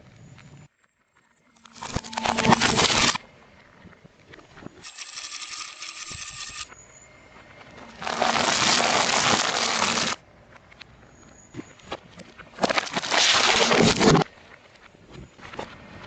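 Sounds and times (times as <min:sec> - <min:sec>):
objects crushed under car tyre: 0:12.6 - 0:14.3.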